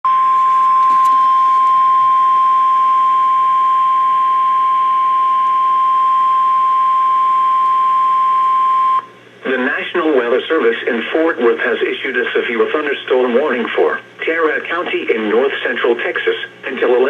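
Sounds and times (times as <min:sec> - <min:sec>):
steady high alarm beep: 0:00.1 - 0:09.1.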